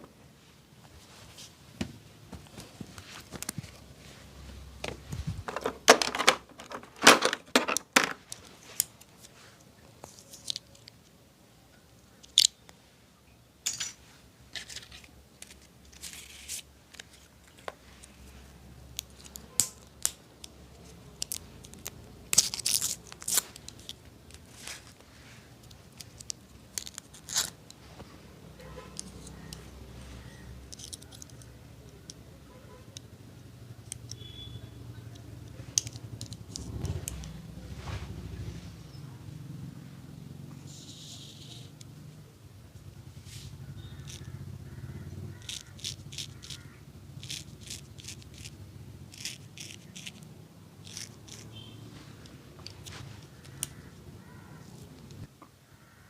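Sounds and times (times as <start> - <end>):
scissors snipping hair: 35.7 - 37.4, 45.3 - 48.5, 49.1 - 51.6, 52.6 - 55.0.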